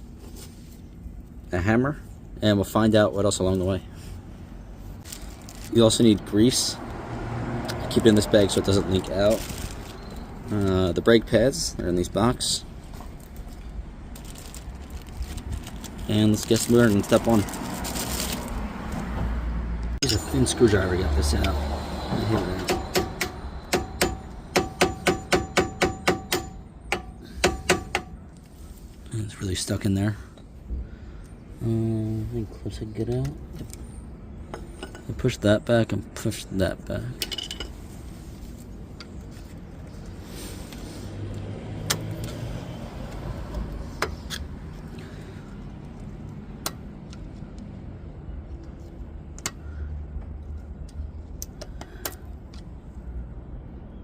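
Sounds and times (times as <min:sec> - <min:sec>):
hammer tapping metal punch: 0:22.6 - 0:28.2.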